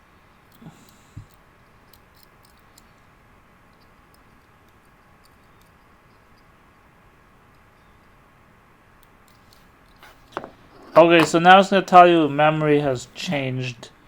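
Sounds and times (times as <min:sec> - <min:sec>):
soft knocks: 0:10.3 - 0:10.6.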